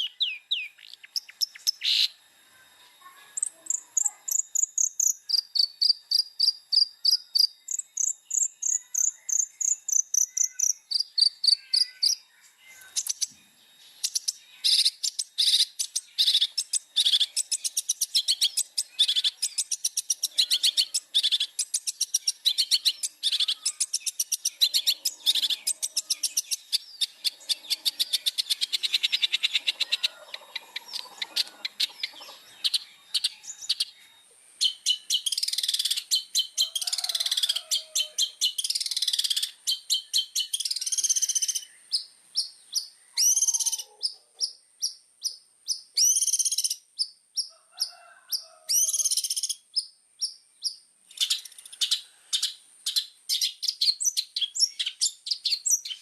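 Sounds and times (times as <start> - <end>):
shrike singing: 3.0 - 43.9.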